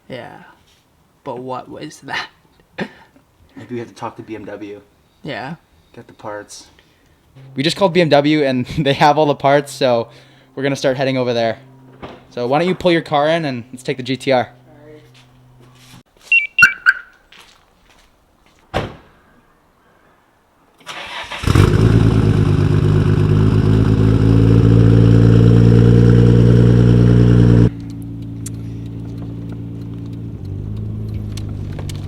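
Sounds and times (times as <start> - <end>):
starter cranking engine: 20.9 - 23.4
car engine idling: 21.4 - 32.0.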